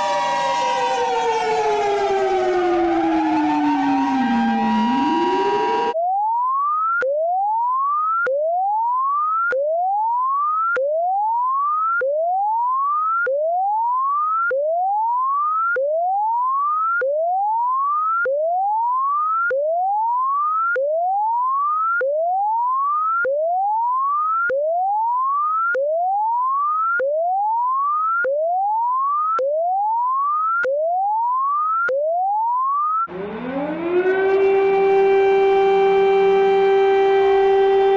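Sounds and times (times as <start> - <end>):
electronic siren tone sweeping up: 0.0 - 6.1, 33.1 - 37.9.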